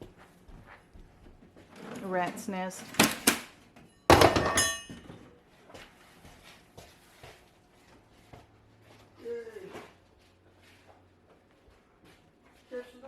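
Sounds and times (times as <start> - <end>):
loud crash with metallic ring: 4.1 - 5.0.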